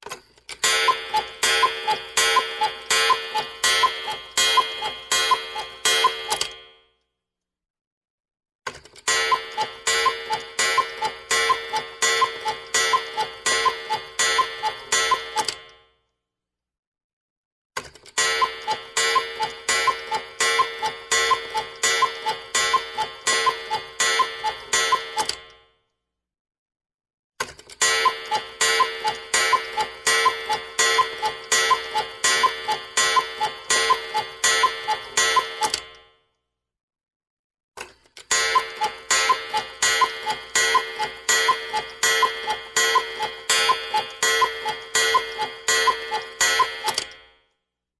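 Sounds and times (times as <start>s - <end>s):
cuckoo clock ringing strikes: 0.4s - 6.7s, 9.0s - 15.7s, 18.1s - 25.6s, 27.7s - 36.1s, 38.2s - 47.4s.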